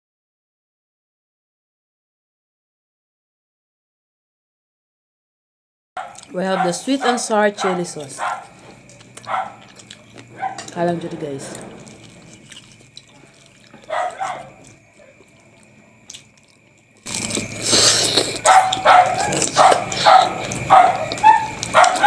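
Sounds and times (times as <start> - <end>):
dog barking: 6.0 - 10.8, 13.2 - 15.2, 18.4 - 22.0.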